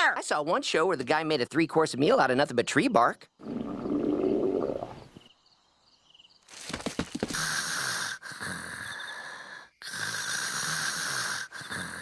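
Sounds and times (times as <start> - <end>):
raspy hissing stomach growl: 3.4 - 5.0, 7.3 - 9.0, 9.8 - 12.0.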